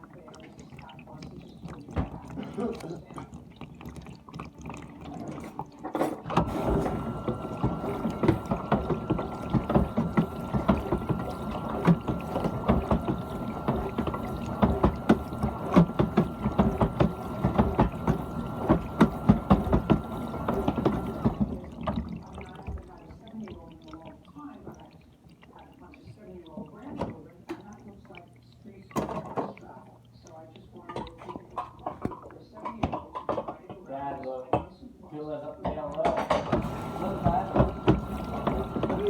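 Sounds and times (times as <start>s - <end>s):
dishwasher hum: 0.0s - 34.1s, 35.6s - 39.0s
dishwasher water spraying: 6.0s - 23.4s, 36.3s - 39.0s.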